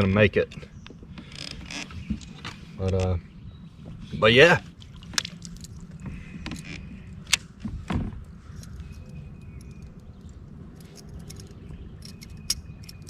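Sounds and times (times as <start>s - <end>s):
kayak handling clicks and knocks: 0.4s - 3.1s, 4.8s - 10.2s.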